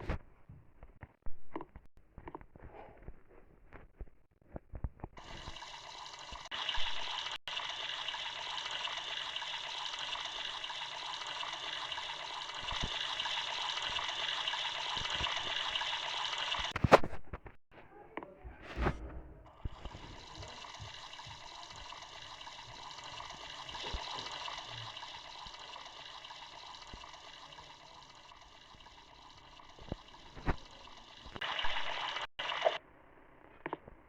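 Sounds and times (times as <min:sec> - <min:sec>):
water running: 0:05.2 - 0:16.8, 0:19.5 - 0:32.8.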